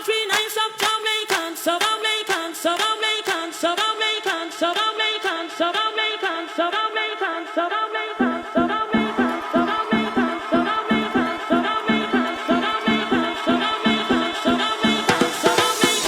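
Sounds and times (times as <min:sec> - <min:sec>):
clicking beat: 0:08.2 - 0:16.0.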